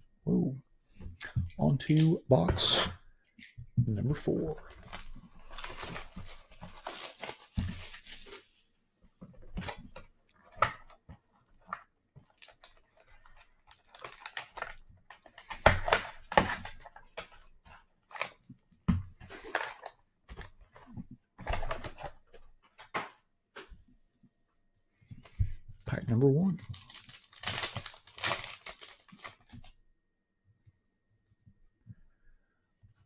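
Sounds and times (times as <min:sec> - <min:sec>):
wrapper crinkling: 0:04.6 - 0:08.6, 0:12.3 - 0:16.7, 0:26.6 - 0:29.5
wrapper tearing: 0:04.8 - 0:08.6, 0:12.3 - 0:16.8, 0:26.6 - 0:29.5.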